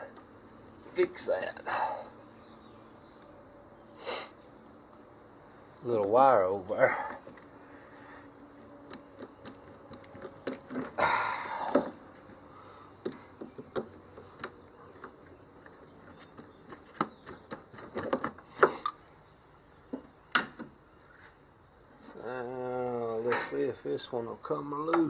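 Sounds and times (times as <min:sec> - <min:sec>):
hand tools clicking and tapping metal: 0:08.9 - 0:12.0, 0:13.0 - 0:19.0.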